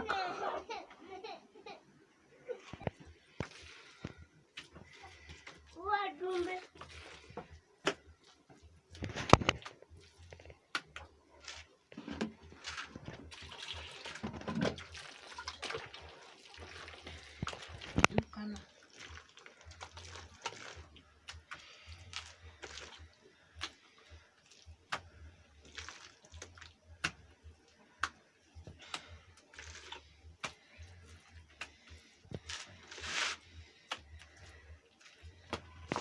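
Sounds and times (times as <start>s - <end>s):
wet mud slaps and squelches: 7.8s - 8.1s, 24.5s - 27.4s, 28.0s - 33.0s
mud smearing: 15.0s - 23.0s, 23.6s - 36.0s.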